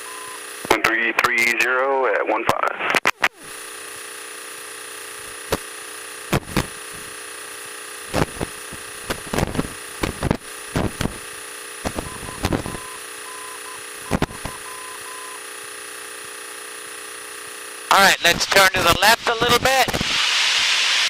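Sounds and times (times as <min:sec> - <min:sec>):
engine and electronics hum and hiss: 0:00.0 - 0:21.0
short beeps: 0:12.0 - 0:15.4.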